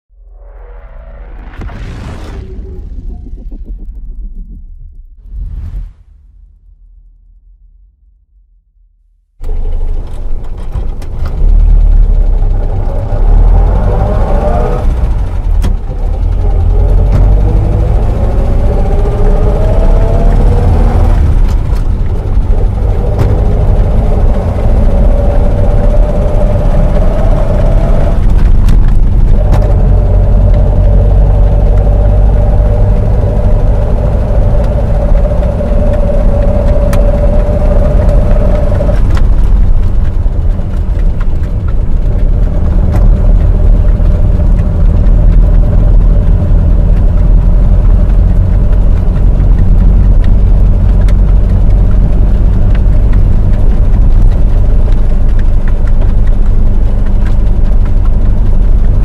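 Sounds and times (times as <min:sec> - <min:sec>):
whine climbing in pitch: 0:00.0 - 0:08.9
bus engine and road rumble: 0:09.4 - 0:59.0
sharp rattles or clicks: 0:21.1 - 0:59.0.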